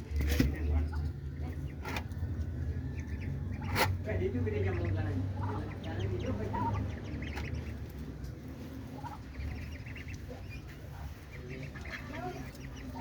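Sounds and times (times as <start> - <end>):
ducklings peeping: 0.0 - 13.0
low steady hum: 0.0 - 13.0
fowl clucking: 2.9 - 13.0.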